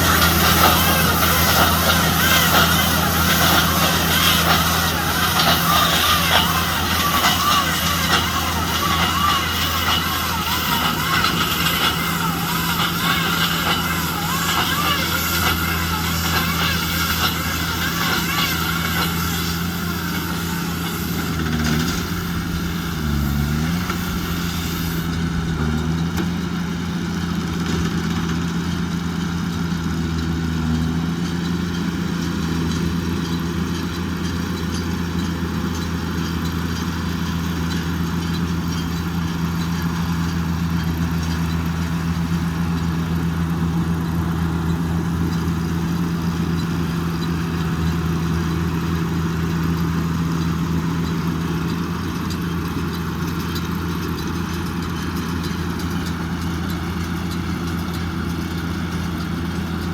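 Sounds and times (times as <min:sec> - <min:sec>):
mechanical hum: 0:00.0 - 0:26.9
tractor engine under load: 0:00.0 - 0:59.9.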